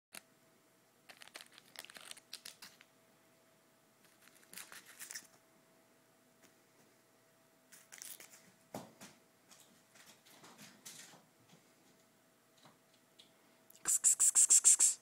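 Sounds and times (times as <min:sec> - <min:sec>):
candy wrapper crinkling: 0:01.1 - 0:02.8, 0:04.1 - 0:05.3.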